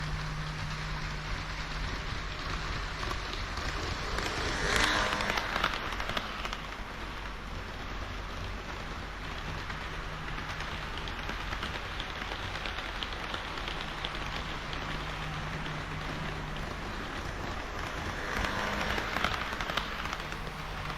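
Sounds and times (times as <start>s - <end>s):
low steady hum: 0.0s - 4.8s
model train wheels clattering: 0.0s - 20.9s.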